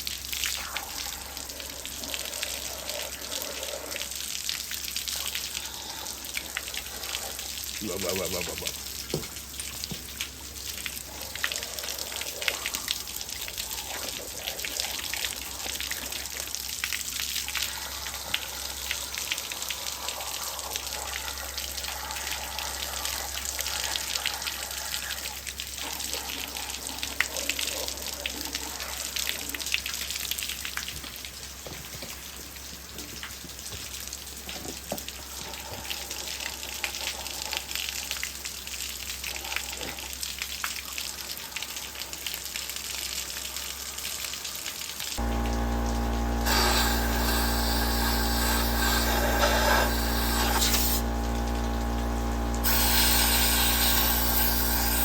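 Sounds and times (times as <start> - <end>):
water spraying into engine block: 45.2 - 55.0.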